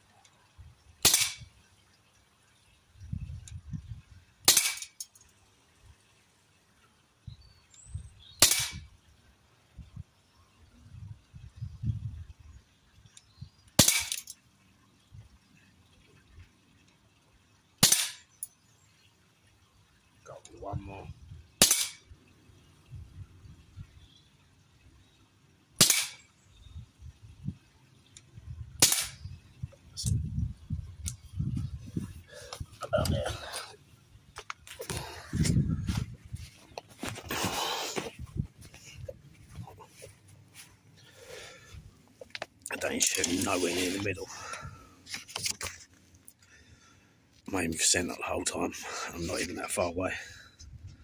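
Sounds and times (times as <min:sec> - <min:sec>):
air rifle shots: 0:01.0 - 0:01.5, 0:04.5 - 0:05.0, 0:08.4 - 0:08.9, 0:13.8 - 0:14.2, 0:17.8 - 0:18.2, 0:21.6 - 0:22.0, 0:25.8 - 0:26.2, 0:28.8 - 0:29.3.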